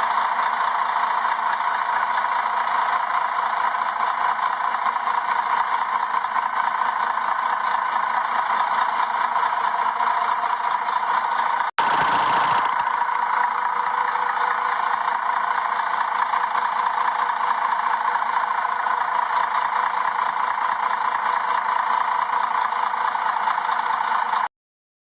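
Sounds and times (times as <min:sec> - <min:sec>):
car engine idling: 0:11.8 - 0:13.0.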